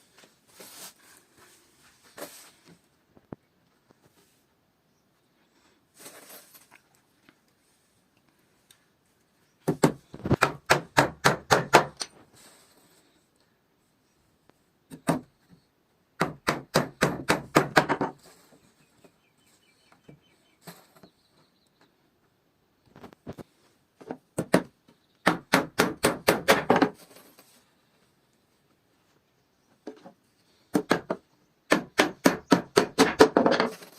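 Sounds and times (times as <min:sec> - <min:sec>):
hammering on wood: 0:09.6 - 0:12.0, 0:16.2 - 0:18.2, 0:24.4 - 0:26.9, 0:30.7 - 0:33.6.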